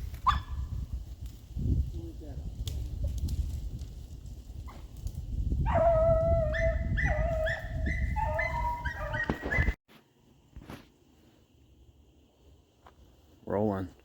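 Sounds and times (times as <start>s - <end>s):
dogs baying: 5.7s - 9.8s.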